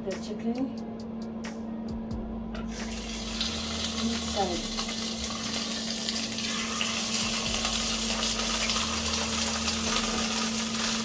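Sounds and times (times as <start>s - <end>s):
steady low hum: 0.0s - 11.0s
chicken frying in oil: 2.8s - 11.0s.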